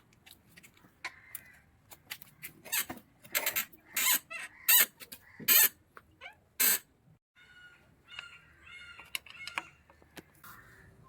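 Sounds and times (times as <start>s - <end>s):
motorcycle squeaking: 2.6s - 5.8s.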